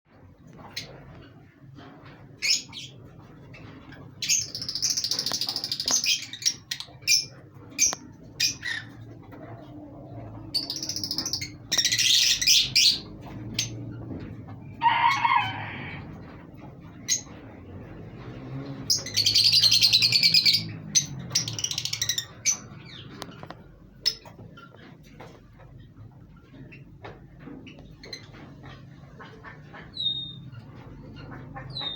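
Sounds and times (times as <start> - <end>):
lovebirds chattering: 0.6 - 14.7, 16.2 - 25.0, 27.7 - 31.9
bird chirps: 4.2 - 9.0, 10.5 - 13.8, 18.9 - 24.3, 29.9 - 31.9.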